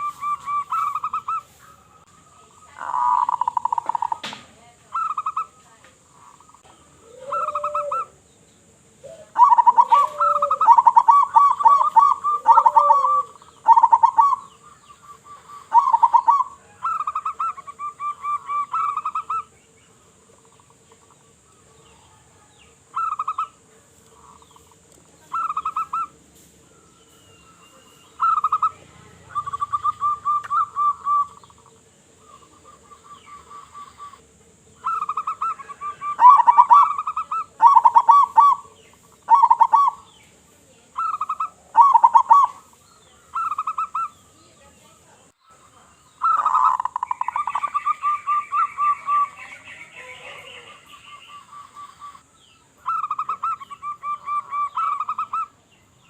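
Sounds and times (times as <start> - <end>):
doves trilled cooing: 0.0 - 56.0
soft low coos: 6.1 - 8.2.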